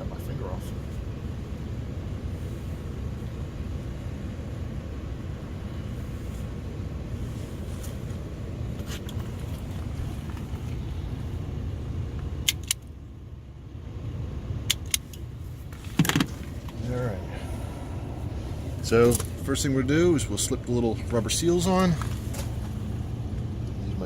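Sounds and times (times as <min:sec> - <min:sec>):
low rumble: 0:15.2 - 0:24.0.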